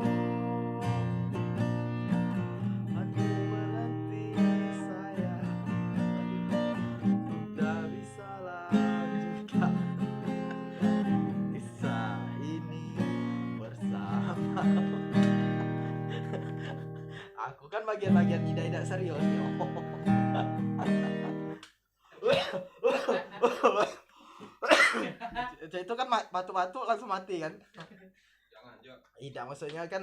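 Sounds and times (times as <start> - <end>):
acoustic guitar strumming chords: 0.0 - 17.3, 18.0 - 21.6.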